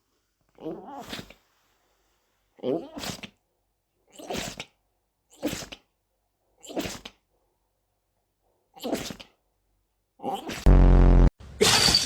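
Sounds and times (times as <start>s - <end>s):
animal sneezes: 0.9s - 1.4s, 2.7s - 3.4s, 4.1s - 5.9s, 6.6s - 7.2s, 8.8s - 9.4s, 10.3s - 10.7s.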